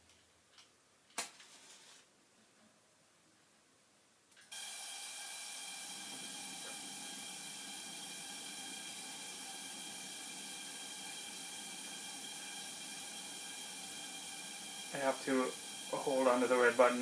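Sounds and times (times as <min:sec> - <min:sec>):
gas heater hissing: 0:04.5 - 0:17.0.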